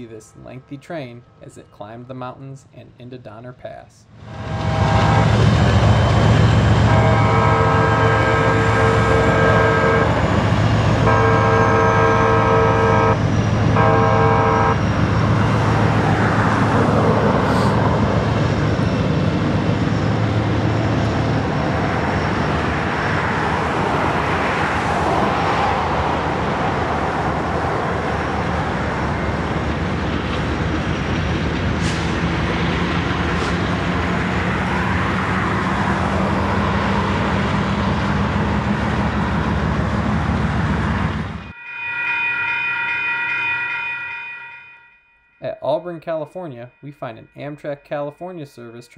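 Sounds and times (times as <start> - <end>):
train rolling past: 4.0 - 44.9
locomotive horn blasts: 4.2 - 15.4.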